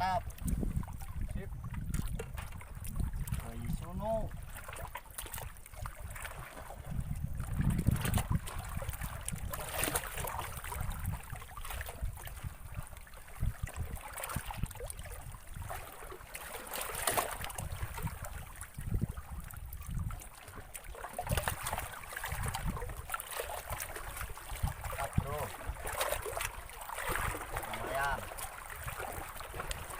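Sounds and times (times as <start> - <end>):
wind gusting on microphone: 0.0 - 4.6, 5.9 - 15.9, 17.4 - 20.3, 21.2 - 23.1, 24.5 - 26.5
water lapping and splashing: 0.0 - 29.9.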